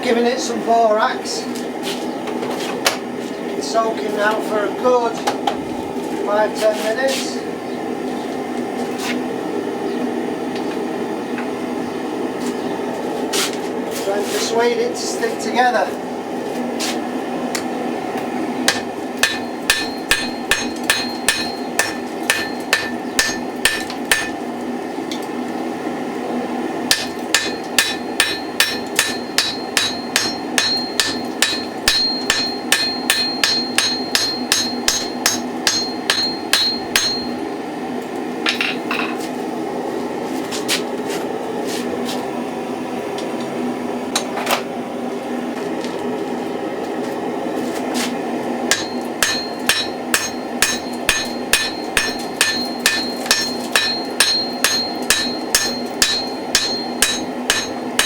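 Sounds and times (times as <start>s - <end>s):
forge running: 16.0s - 58.0s
hammer ringing on anvil: 18.7s - 24.4s, 26.9s - 37.4s, 48.7s - 58.0s.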